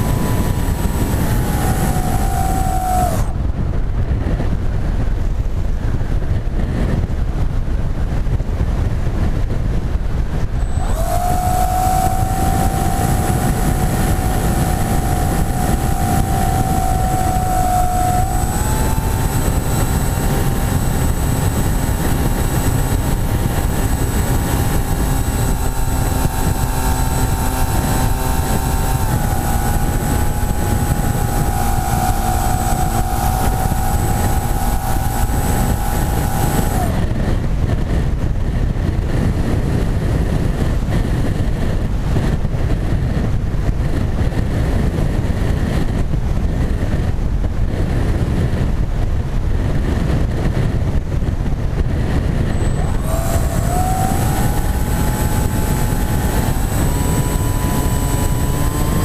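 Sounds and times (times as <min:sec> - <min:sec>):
electric motor and propeller whining: 0:00.0 - 0:59.0
wind rush: 0:00.0 - 0:59.0.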